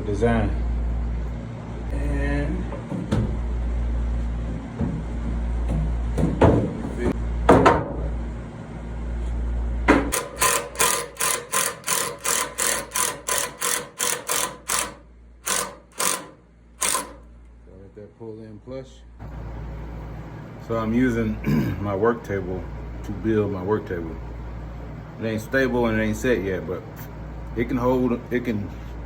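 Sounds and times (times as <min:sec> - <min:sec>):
knocks on wood: 0:02.7 - 0:03.4, 0:04.4 - 0:08.1, 0:09.9 - 0:10.3
cordless drill bursts: 0:10.1 - 0:17.3.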